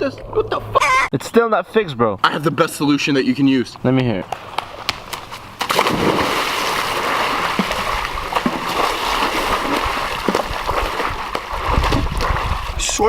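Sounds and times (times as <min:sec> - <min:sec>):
splashing water: 0:04.4 - 0:13.0.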